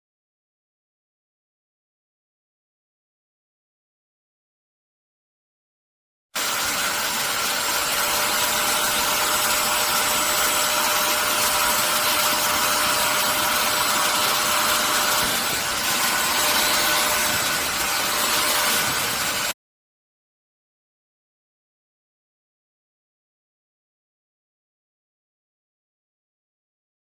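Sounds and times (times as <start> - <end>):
suction motor whoosh and whine: 6.4 - 19.6.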